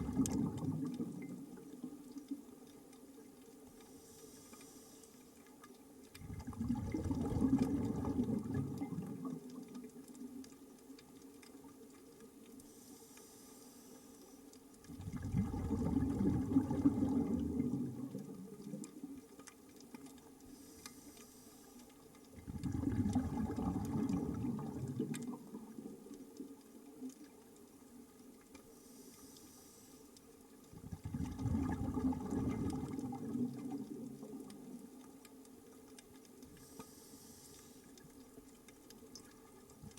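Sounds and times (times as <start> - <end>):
exhaled bubbles underwater: 0.0 - 2.6, 6.1 - 12.0, 14.8 - 19.4, 22.2 - 28.3, 30.6 - 36.7
faint regulator hiss: 1.0 - 6.2, 8.8 - 14.9, 18.0 - 22.4, 24.9 - 30.8, 33.5 - 39.9.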